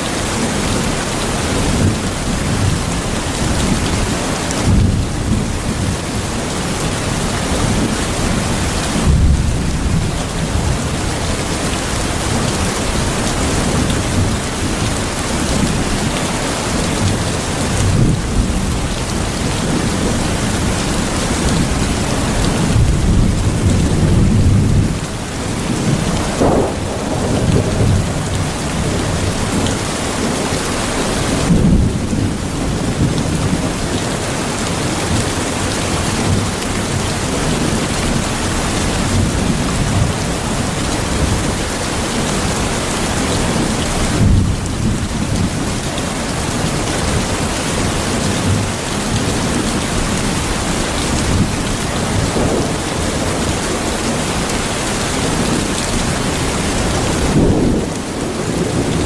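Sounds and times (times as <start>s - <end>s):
heavy rain: 0.0s - 59.0s
thunder rumbling: 0.2s - 34.0s, 46.5s - 59.0s.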